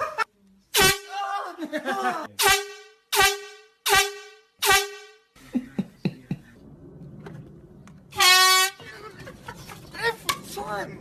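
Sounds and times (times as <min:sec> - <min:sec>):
air horn blasts: 0:00.7 - 0:01.2, 0:02.4 - 0:05.3, 0:08.1 - 0:08.8.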